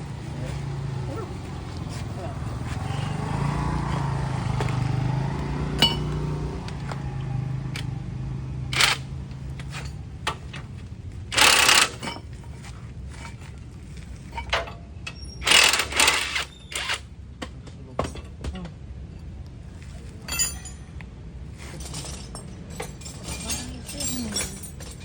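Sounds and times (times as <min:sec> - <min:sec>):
low motor hum: 0:00.0 - 0:14.3
metal tools clanking: 0:05.8 - 0:06.4, 0:08.7 - 0:17.0, 0:20.0 - 0:25.0.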